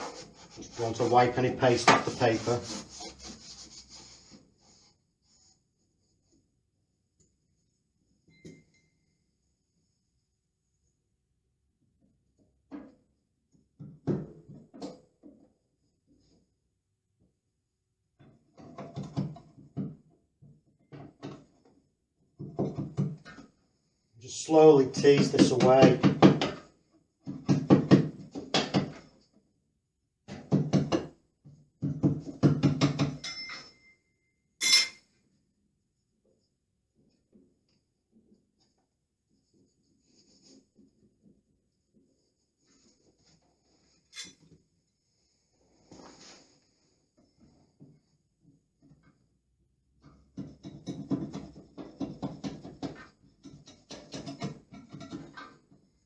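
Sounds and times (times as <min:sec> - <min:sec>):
brush rubbing wallpaper on wall: 0:00.0 - 0:05.6, 0:45.6 - 0:47.7.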